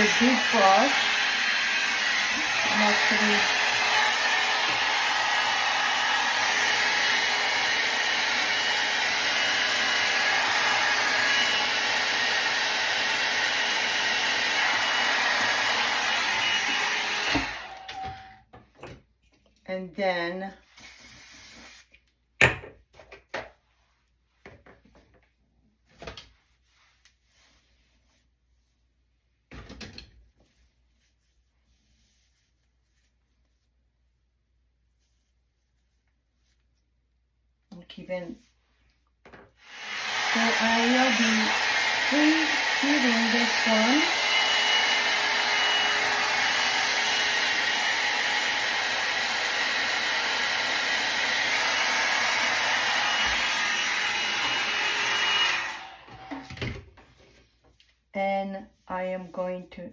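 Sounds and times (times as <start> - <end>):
hair dryer running: 0.0 - 18.4, 39.6 - 56.7.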